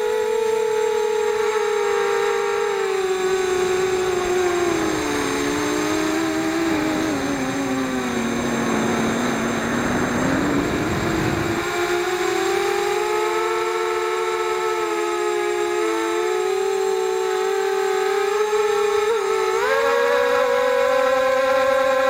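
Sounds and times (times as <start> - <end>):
drone motors whining: 0.0 - 22.0
rushing air noise: 4.1 - 12.4.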